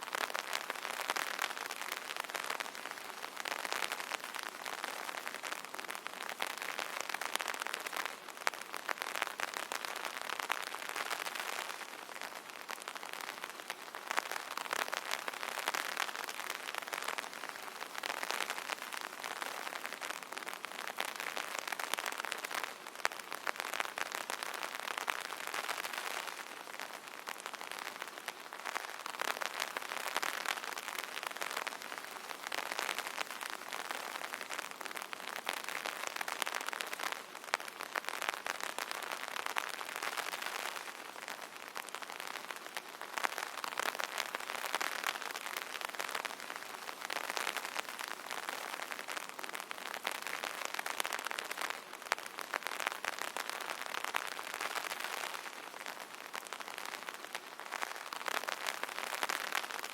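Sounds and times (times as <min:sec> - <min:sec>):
rain pattering on umbrella: 0:00.0 - 0:59.9.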